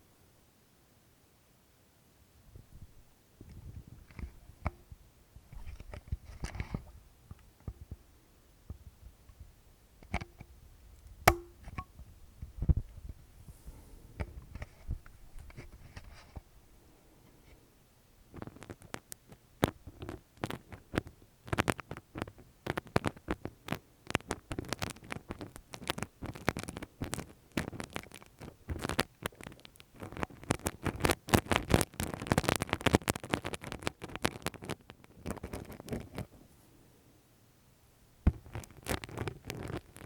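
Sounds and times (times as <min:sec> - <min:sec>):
crackling scratches on microphone: 0:02.6 - 0:08.0, 0:11.2 - 0:16.6, 0:18.3 - 0:36.6, 0:38.2 - 0:40.0.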